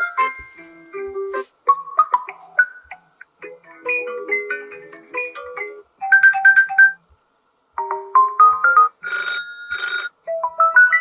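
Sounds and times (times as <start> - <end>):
phone ringtone melodies: 3.8 - 7.0, 7.8 - 11.0
dense ringing bursts: 9.0 - 10.1.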